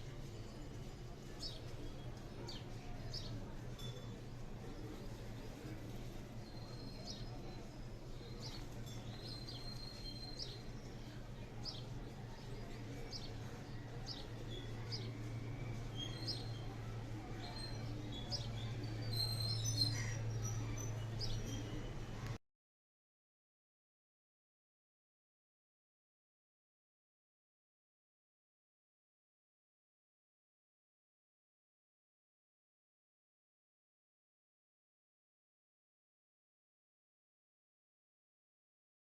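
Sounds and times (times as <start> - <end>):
small birds chirping: 0.1 - 22.4.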